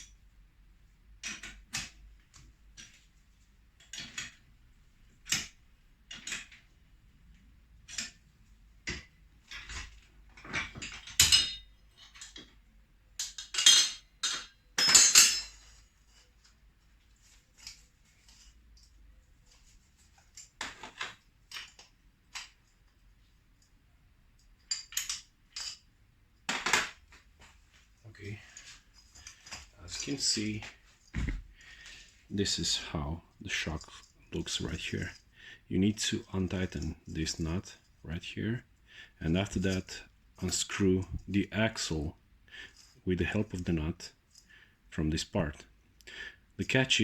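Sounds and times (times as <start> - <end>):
metal tools clinking and clanking: 8.9 - 12.6, 13.2 - 16.2, 24.6 - 25.9, 28.2 - 35.3.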